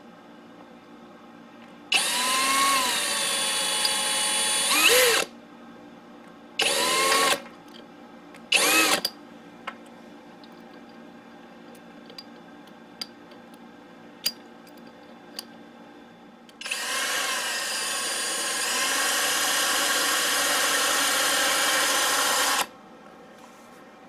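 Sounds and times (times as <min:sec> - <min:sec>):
power drill running: 0:01.9 - 0:05.3, 0:06.6 - 0:07.4, 0:08.5 - 0:09.0, 0:16.6 - 0:22.7.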